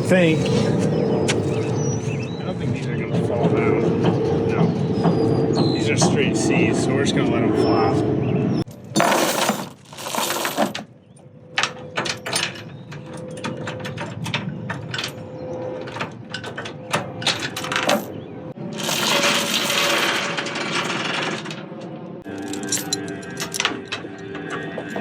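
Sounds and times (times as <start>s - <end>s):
metal chain clinking and rattling: 8.7s - 10.9s, 11.6s - 21.6s, 22.2s - 25.0s.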